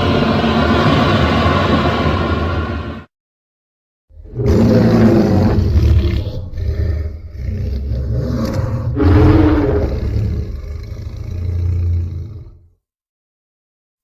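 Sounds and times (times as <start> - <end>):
deep monster roar: 4.1 - 12.7.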